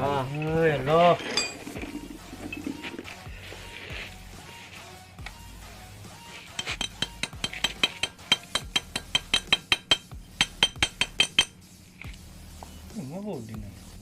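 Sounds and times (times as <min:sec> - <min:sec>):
metal tool clinking on engine parts: 0:00.2 - 0:03.0, 0:06.5 - 0:11.6.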